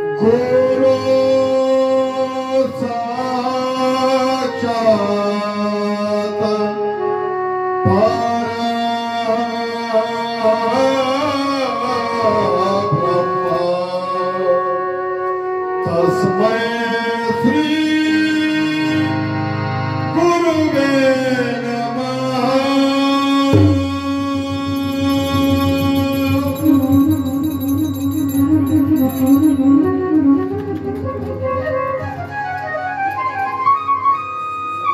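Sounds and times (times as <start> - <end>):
man singing devotional song: 0.0 - 29.9
sustained instrumental accompaniment: 0.0 - 34.9
drumming: 23.6 - 32.0.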